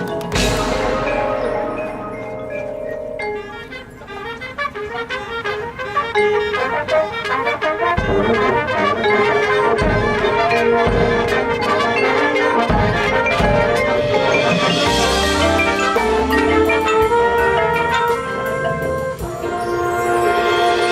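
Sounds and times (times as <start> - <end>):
mallet percussion runs: 0.0 - 5.2, 8.0 - 20.9
marching band playing: 0.0 - 20.9
low drum hits: 0.3 - 4.4.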